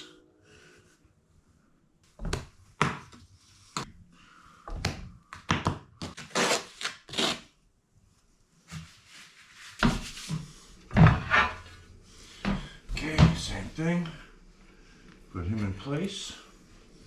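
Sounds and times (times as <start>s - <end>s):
tile rubbing and scraping: 8.6s - 11.8s.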